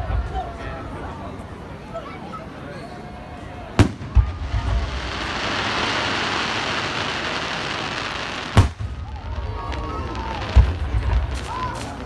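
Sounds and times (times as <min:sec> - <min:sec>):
fireworks bangs: 0:03.8 - 0:12.0.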